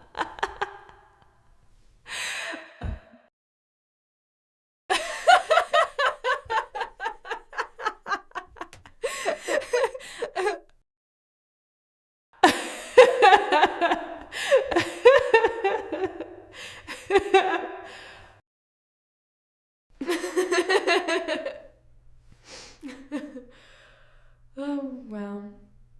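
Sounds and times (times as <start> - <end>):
woman laughing: 0.0 - 1.2, 4.9 - 10.7, 12.4 - 17.9, 20.0 - 21.7, 22.8 - 23.4.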